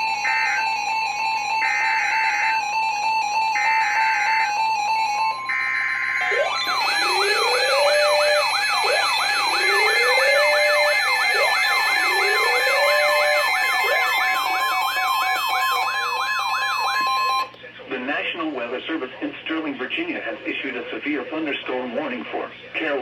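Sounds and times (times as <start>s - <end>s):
fast sweeping siren wail: 0.0s - 17.5s
slow rising siren tone: 0.0s - 17.5s
steady high tone: 0.0s - 17.5s.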